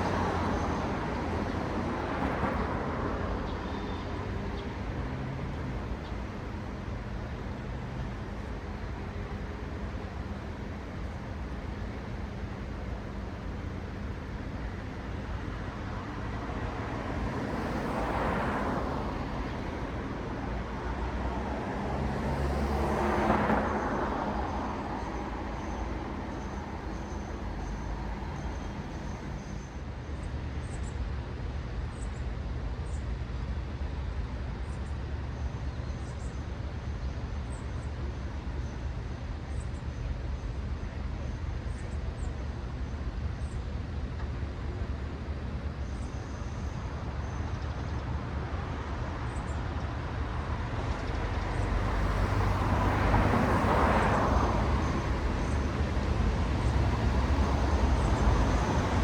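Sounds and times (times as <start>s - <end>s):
cars passing: 0.0s - 12.8s, 13.4s - 29.6s, 46.5s - 59.0s
low traffic rumble: 0.0s - 59.0s.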